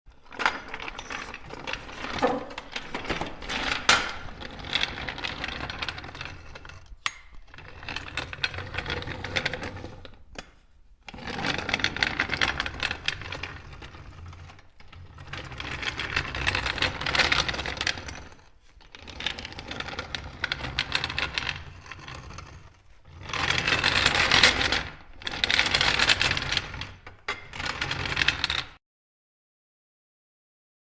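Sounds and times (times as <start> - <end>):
metal cart rattling on hard floor: 0.3 - 6.2.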